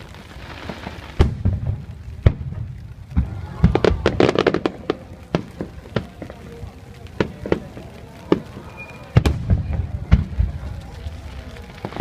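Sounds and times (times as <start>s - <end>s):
fireworks crackling pops: 0.0s - 12.0s
fireworks shells booming: 0.0s - 12.0s.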